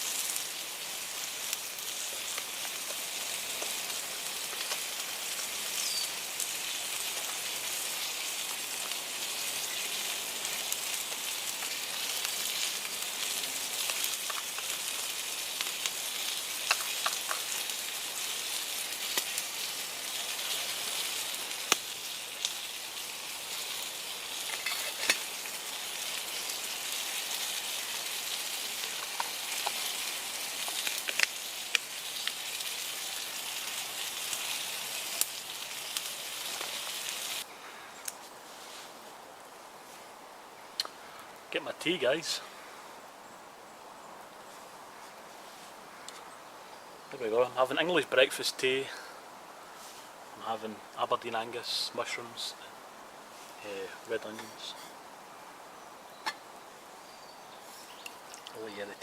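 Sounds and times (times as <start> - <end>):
steak sizzling in a pan: 0.0 - 37.5
sharp pops of frying fat: 1.5 - 5.4, 10.7 - 18.1, 19.0 - 19.5, 21.5 - 22.6, 28.8 - 32.4, 56.2 - 56.4.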